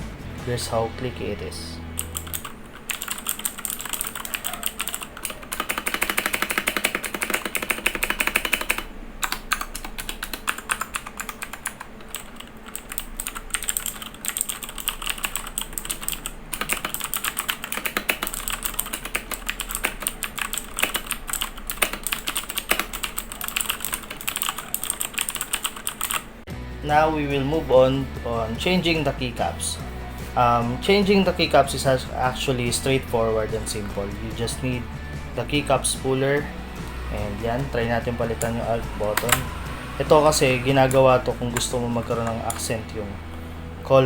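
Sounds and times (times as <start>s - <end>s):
mechanical keyboard typing clicks: 2.0s - 26.2s, 38.3s - 39.5s.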